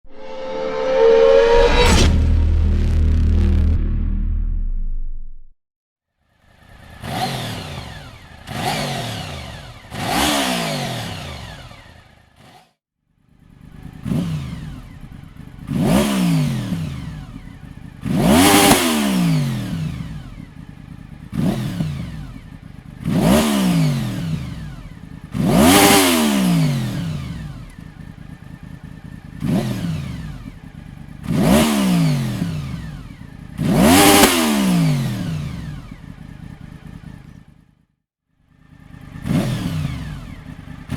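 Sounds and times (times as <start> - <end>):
motorcycle engine revving: 6.3 - 37.8, 38.4 - 40.9.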